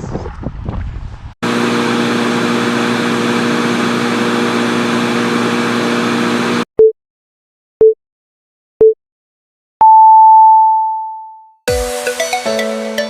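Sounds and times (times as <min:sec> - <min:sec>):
short beeps: 0:09.8 - 0:11.5.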